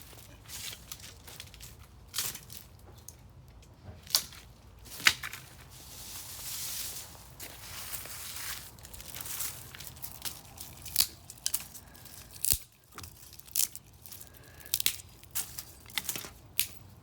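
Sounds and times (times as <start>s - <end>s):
tree branches snapping: 4.1s - 5.5s, 8.7s - 16.8s.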